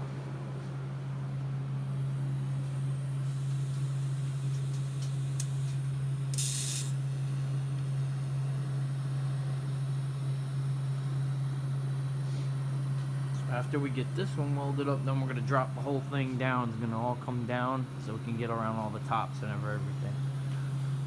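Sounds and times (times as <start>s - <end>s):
steady low hum: 0.0s - 21.0s
welding hiss and crackle: 3.2s - 7.0s.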